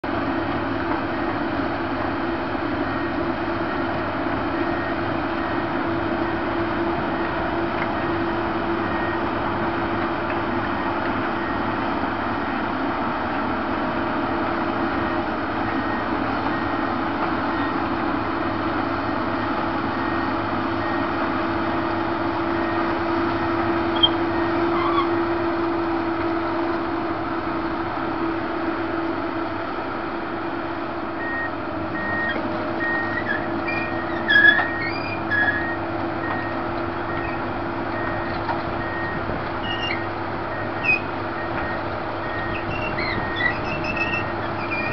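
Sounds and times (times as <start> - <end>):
excavator diesel engine running: 0.0 - 44.9
short sharp squeaks: 23.9 - 25.2, 33.1 - 35.7, 39.6 - 40.1, 40.8 - 41.1, 42.4 - 44.9.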